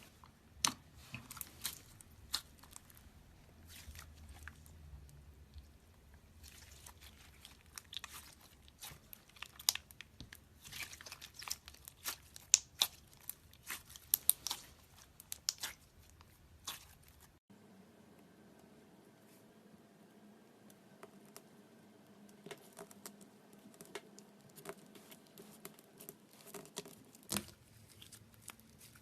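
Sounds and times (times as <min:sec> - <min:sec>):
slime crackling and popping: 0:06.4 - 0:17.2.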